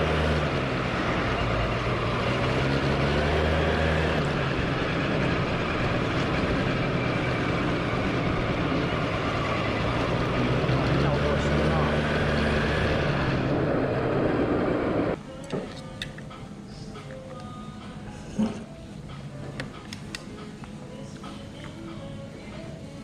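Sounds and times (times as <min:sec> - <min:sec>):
scooter engine running: 0:00.0 - 0:15.2.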